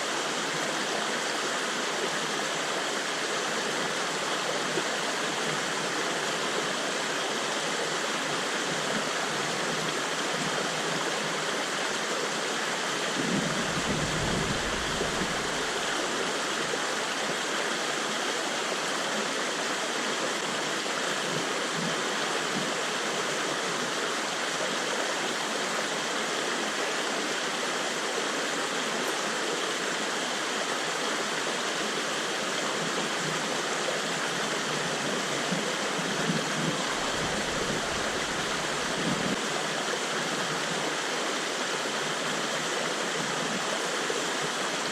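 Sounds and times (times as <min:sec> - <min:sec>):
flowing river water: 0:00.0 - 0:44.9
low rumble: 0:13.6 - 0:15.9.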